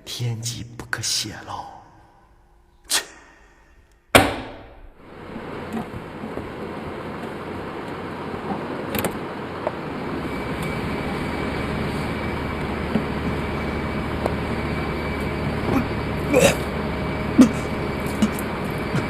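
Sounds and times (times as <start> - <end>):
machine rumbling: 3.8 - 19.0
high steady whine: 4.6 - 19.0.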